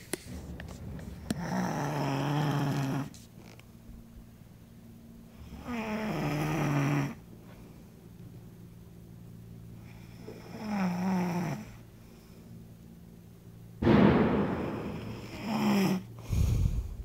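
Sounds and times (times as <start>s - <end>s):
man snoring: 1.4s - 3.1s, 5.4s - 7.2s, 9.8s - 11.8s, 14.8s - 16.6s
quiet breathing: 5.3s - 8.3s, 9.7s - 13.2s, 16.0s - 17.0s.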